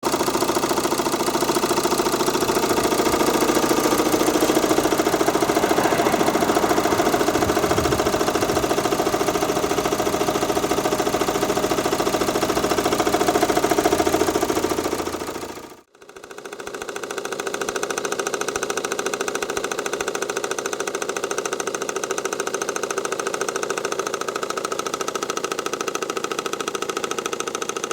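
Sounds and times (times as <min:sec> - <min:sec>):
fast even engine knock: 0:00.1 - 0:15.6
car engine running: 0:01.6 - 0:15.5.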